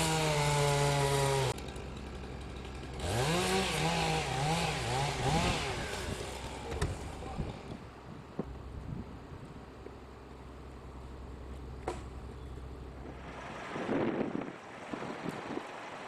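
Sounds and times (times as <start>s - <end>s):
chainsaw revving and idling: 0.0s - 7.8s.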